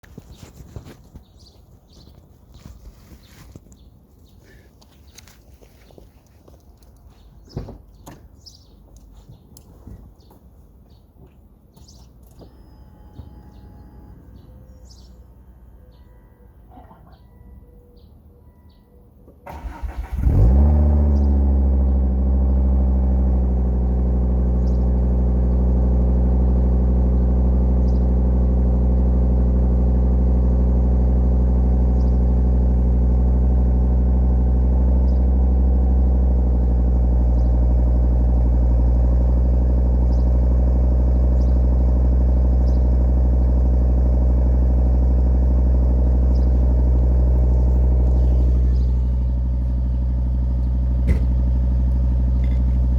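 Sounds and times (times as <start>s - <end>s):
car engine starting and idling: 18.5s - 52.9s.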